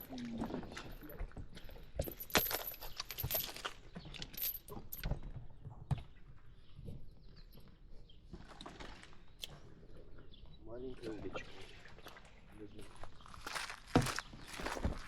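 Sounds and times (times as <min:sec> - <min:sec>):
metallic jingling and clinking: 0:00.0 - 0:05.2.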